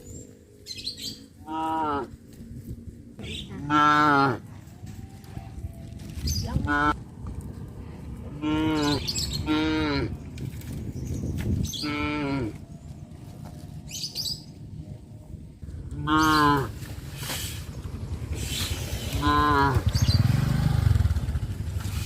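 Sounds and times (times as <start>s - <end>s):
cattle mooing: 3.6s - 4.4s, 8.3s - 10.1s, 11.8s - 12.6s, 15.9s - 16.8s, 19.2s - 20.0s.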